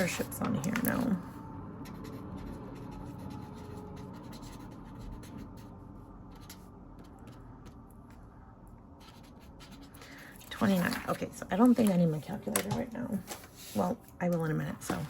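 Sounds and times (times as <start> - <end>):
pen scratching on paper: 1.8 - 5.7.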